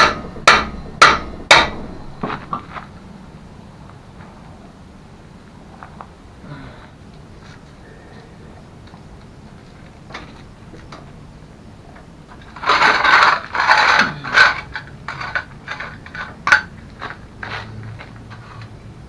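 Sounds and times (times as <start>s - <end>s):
sharp clicks and knocks: 0.0s - 2.9s
loud metal scrapes: 0.0s - 3.1s.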